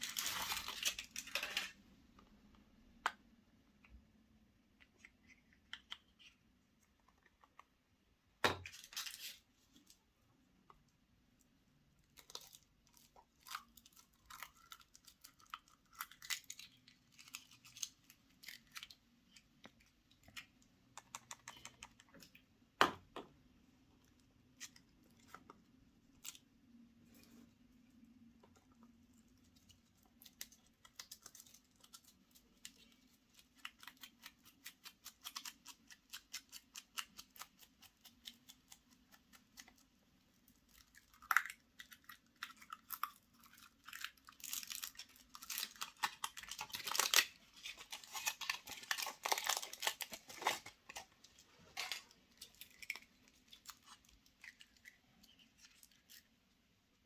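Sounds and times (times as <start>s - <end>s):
foil wrappers crinkling: 0.0s - 1.8s, 43.9s - 51.1s.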